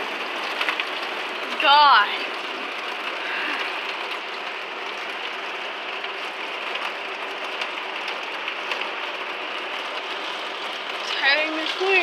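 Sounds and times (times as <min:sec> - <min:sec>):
rain falling: 0:00.0 - 0:12.0
single raindrops ticking: 0:00.0 - 0:12.0.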